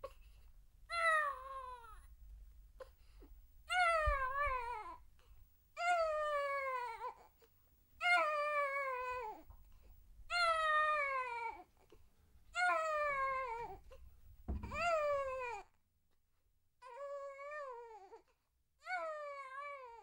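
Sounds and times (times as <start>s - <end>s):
baby crying: 0.9s - 2.1s, 3.7s - 5.0s, 8.0s - 9.4s, 10.3s - 11.8s, 12.6s - 13.8s, 14.6s - 15.7s.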